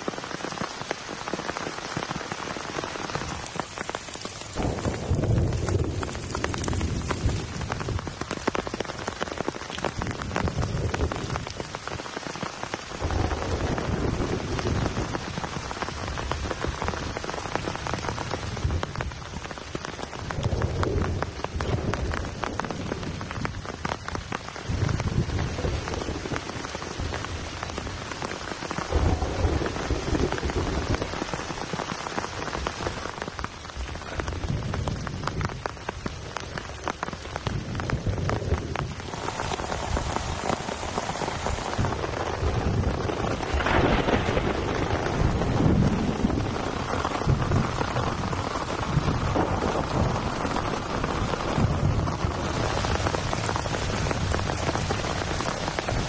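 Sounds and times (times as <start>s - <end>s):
heavy rain falling: 0.0s - 56.0s
deep rumbles: 4.6s - 8.2s.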